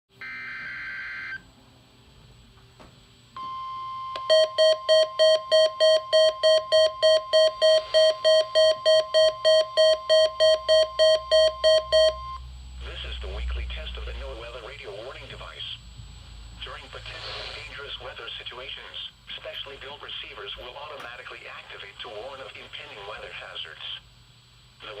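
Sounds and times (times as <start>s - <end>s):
steady warning alarm tone: 0.2s - 1.5s, 3.4s - 15.8s.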